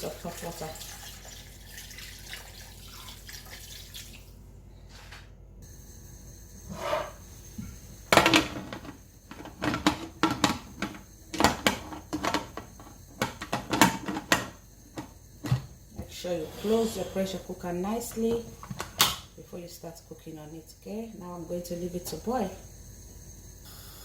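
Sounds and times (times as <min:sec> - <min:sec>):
hot water pouring into a pot: 0:00.0 - 0:04.4
metal lid clanks and clicks: 0:08.1 - 0:15.7.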